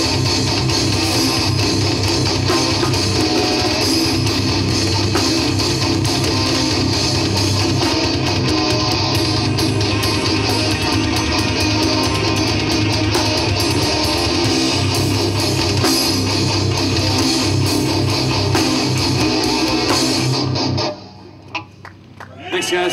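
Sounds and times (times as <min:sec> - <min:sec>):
rock band playing live: 0:00.0 - 0:22.1.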